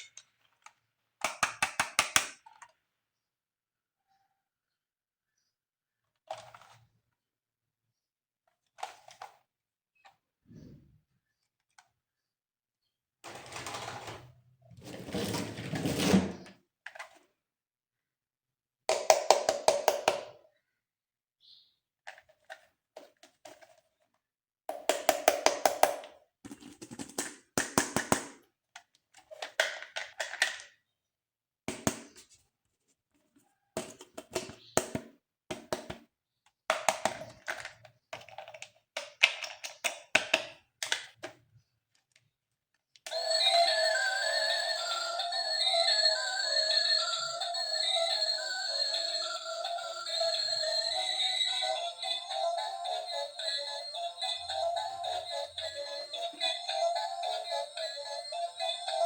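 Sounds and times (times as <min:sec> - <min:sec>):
plastic toys clicking and rattling: 0:08.6 - 0:09.5, 0:22.0 - 0:24.2, 0:24.9 - 0:30.8, 0:36.4 - 0:43.2.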